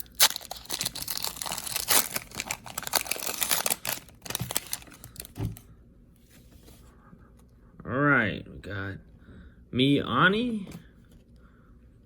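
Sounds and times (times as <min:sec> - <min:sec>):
foil wrapper crinkling and tearing: 0:00.0 - 0:05.4.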